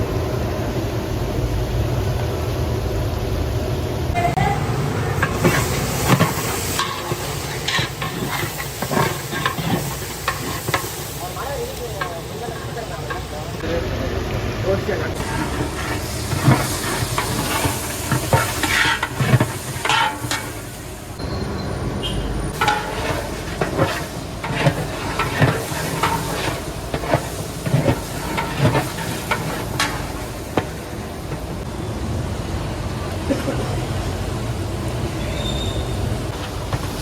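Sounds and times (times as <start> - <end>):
food sizzling in a pot: 0.0 - 37.0
metal spoon scraping a pot: 5.2 - 13.6, 15.2 - 20.9, 22.5 - 30.8.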